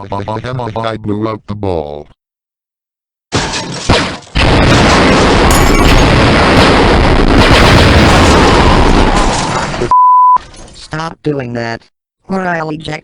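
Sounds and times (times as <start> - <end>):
cartoon explosion blasts: 3.3 - 9.9
long rumbling blast: 4.4 - 9.7.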